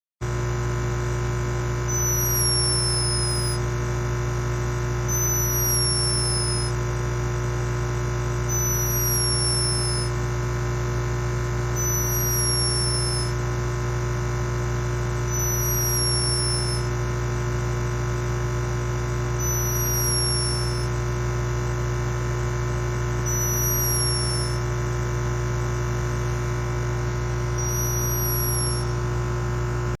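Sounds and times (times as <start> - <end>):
low electrical hum: 0.3 - 30.0
hummingbird snoring whistle: 1.9 - 3.6, 5.0 - 6.8, 8.4 - 10.2, 11.8 - 13.4, 15.2 - 17.0, 19.3 - 21.0, 23.2 - 24.8, 27.3 - 29.0.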